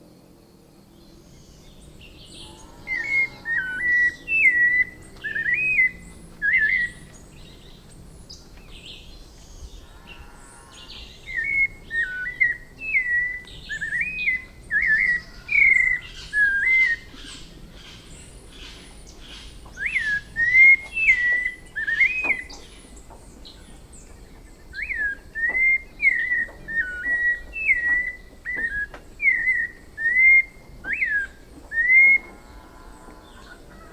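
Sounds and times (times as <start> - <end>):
thrush singing whistled phrases: 24.8 - 32.3.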